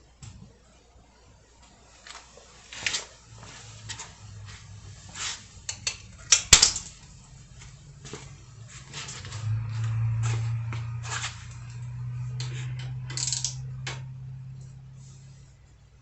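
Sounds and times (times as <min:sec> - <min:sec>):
low steady hum: 0:00.0 - 0:16.0
metal tools clinking: 0:12.4 - 0:13.8.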